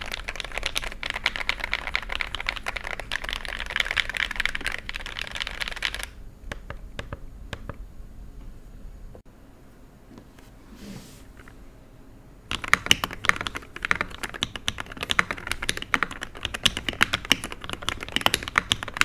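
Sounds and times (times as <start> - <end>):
mechanical keyboard typing: 0.0 - 7.8, 12.5 - 19.0.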